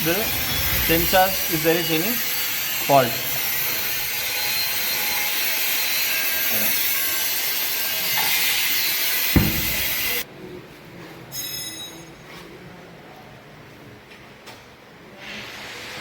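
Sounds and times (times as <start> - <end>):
loud machine hiss: 0.0 - 3.9
high-pitched squeal: 0.0 - 5.5
thump: 9.4 - 10.0.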